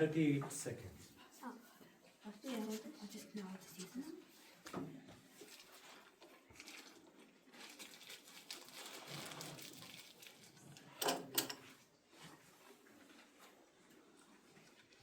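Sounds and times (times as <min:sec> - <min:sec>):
rustling and handling noises: 0:03.8 - 0:15.0.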